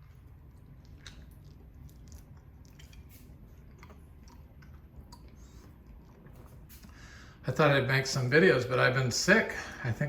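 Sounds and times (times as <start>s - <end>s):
person chewing: 0.0s - 7.0s
wet mouth clicks and smacks: 0.6s - 6.9s.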